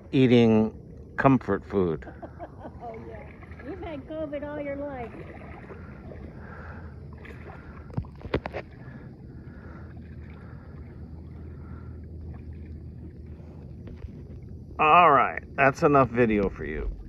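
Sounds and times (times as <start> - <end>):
low rumble: 0.0 - 17.0
paddle water swishes: 2.1 - 14.8.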